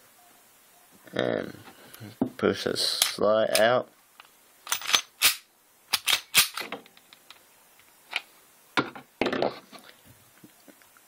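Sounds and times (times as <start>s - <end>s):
pistol slide metallic clicks: 4.7s - 6.6s.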